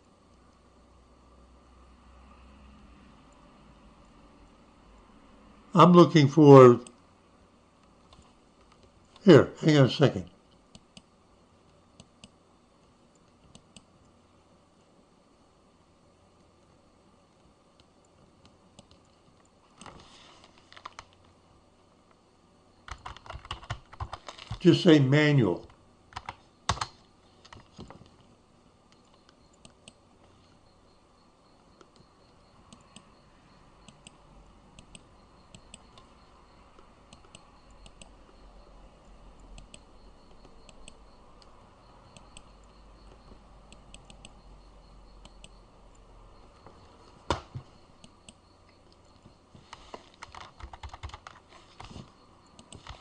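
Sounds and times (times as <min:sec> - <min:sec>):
computer keyboard typing: 0:22.9 - 0:24.7, 0:26.1 - 0:27.8, 0:39.4 - 0:44.4, 0:48.0 - 0:52.0, 0:52.6 - 0:53.0.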